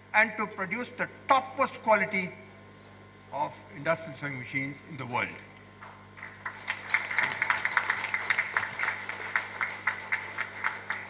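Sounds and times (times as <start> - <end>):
audience applauding: 5.8 - 11.0.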